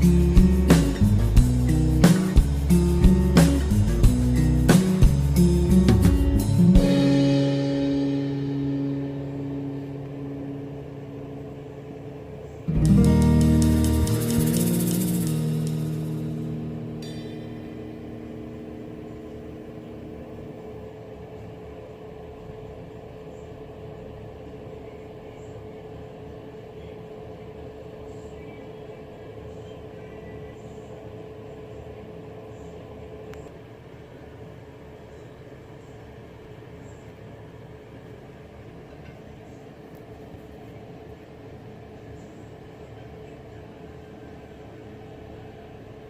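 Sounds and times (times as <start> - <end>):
steady tone: 0.0 - 21.8
washing machine humming: 0.0 - 46.0.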